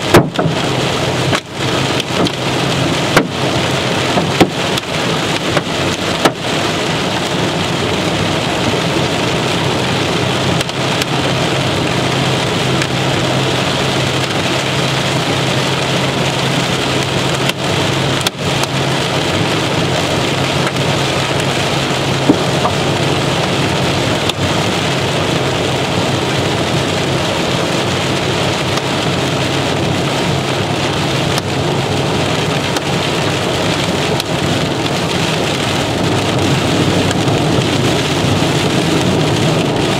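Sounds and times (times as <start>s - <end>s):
rain and hail on vehicle roof: 0.0s - 39.9s.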